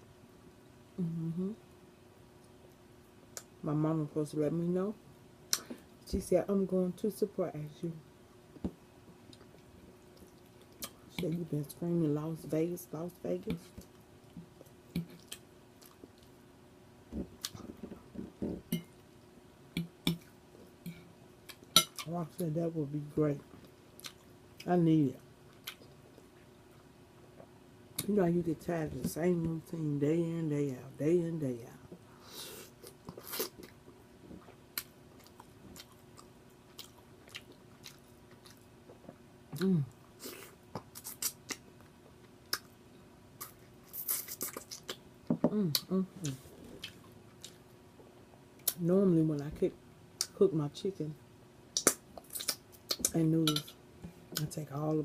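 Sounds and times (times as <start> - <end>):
low voice hum: 0.9 - 1.7, 39.6 - 40.0
chewing food: 32.8 - 39.7, 45.7 - 47.7
wet chewing and mouth smacking: 34.4 - 39.7, 51.8 - 53.8
wet mouth smacking clicks: 51.8 - 53.7.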